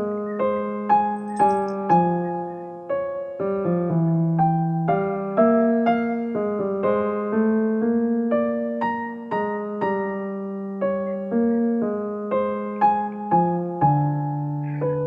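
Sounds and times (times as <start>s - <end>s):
gentle electric piano melody: 0.0s - 15.0s.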